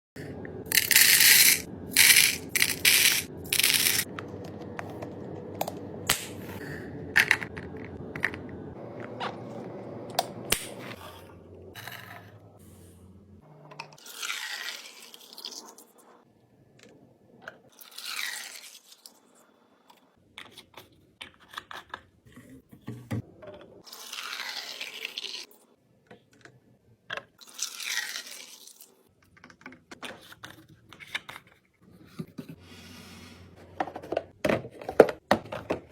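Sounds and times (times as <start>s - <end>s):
items set down clicking: 33.7s - 35.9s.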